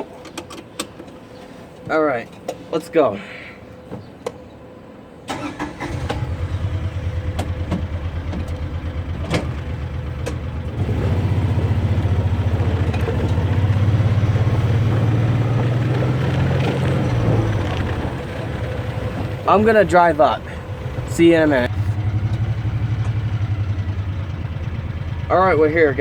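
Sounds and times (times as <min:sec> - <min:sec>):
farm vehicle engine running: 0:05.3 - 0:26.0.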